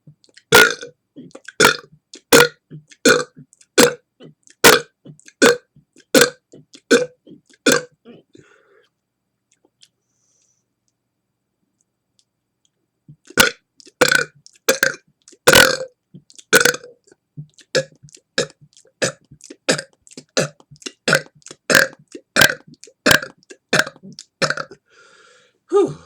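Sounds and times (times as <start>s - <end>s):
man belching: 0.5s - 8.2s, 13.3s - 15.9s, 16.5s - 16.9s, 17.8s - 24.8s.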